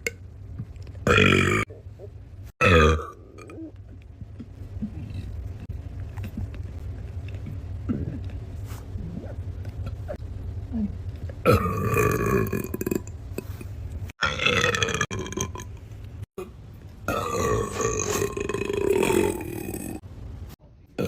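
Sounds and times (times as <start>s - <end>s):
person burping loudly: 1.0s - 1.7s, 2.6s - 3.7s, 11.4s - 13.6s, 14.2s - 15.8s, 16.4s - 20.0s.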